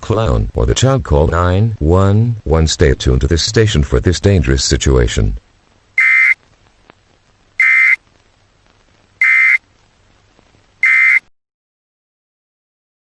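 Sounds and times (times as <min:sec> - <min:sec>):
buzzy electronic alert beeps: 0:06.0 - 0:06.4, 0:07.6 - 0:08.0, 0:09.2 - 0:09.6, 0:10.8 - 0:11.2.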